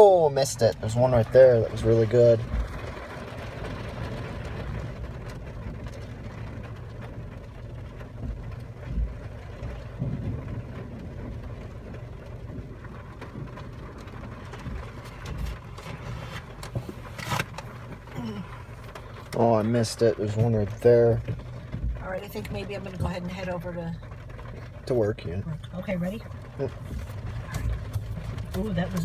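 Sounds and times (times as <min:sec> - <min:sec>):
car interior engine hum: 0:00.0 - 0:29.0
soft low thumps: 0:04.0 - 0:19.4, 0:20.0 - 0:29.0.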